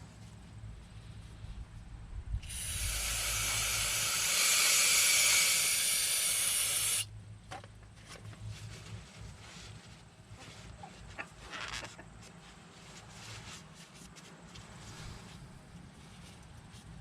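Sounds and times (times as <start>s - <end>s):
aerosol spray hissing: 2.4s - 7.1s.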